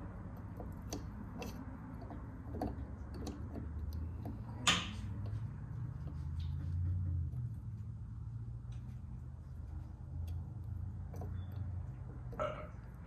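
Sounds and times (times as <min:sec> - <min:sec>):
wrench clicking on nut: 0:00.4 - 0:04.6.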